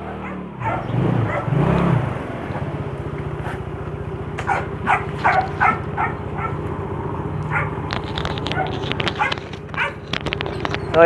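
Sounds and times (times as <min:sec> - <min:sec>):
dog barking: 0:00.0 - 0:01.7, 0:04.4 - 0:06.6, 0:07.5 - 0:07.8, 0:08.5 - 0:10.1
motorcycle engine idling: 0:00.0 - 0:11.0.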